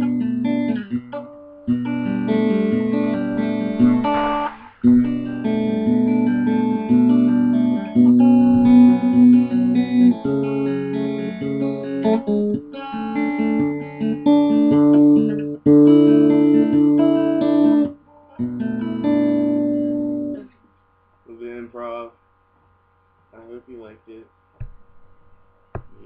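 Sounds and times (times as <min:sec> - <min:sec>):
improvised instrumental music: 0:00.0 - 0:20.4.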